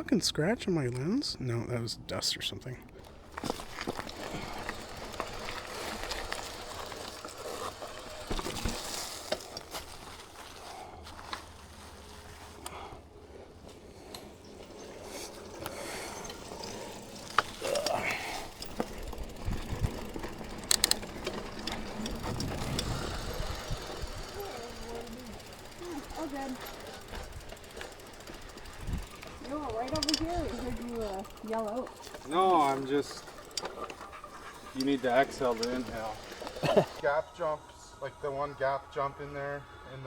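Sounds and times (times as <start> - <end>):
tyres and bike rattling: 0.0 - 37.6
bike hub ratchet clicking: 3.1 - 9.8, 14.1 - 37.0.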